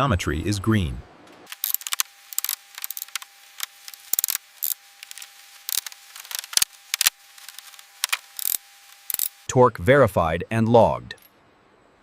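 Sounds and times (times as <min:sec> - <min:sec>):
hand tools clicking and snipping: 0:01.5 - 0:09.4.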